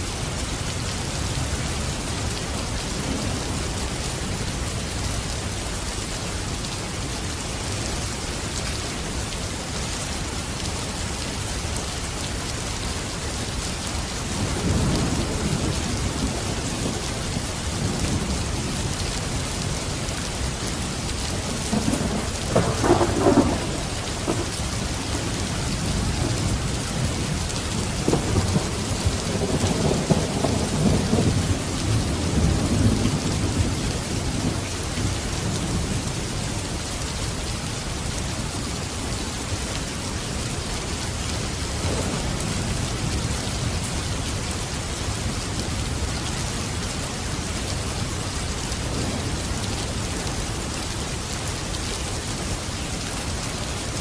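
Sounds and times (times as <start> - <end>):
steady rain: 0.0 - 54.0
rolling thunder: 21.3 - 34.6.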